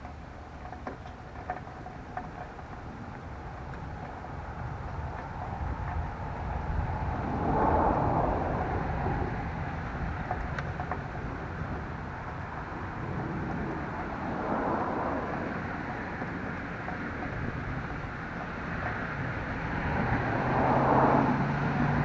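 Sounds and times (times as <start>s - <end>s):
vehicles passing by: 0.0s - 22.0s
low rumble: 6.0s - 10.5s.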